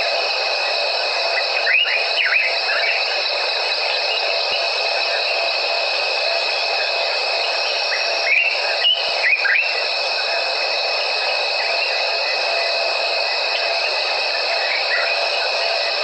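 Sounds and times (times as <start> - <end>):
night insects trilling: 0.0 - 16.0
short chirping calls: 7.4 - 9.8.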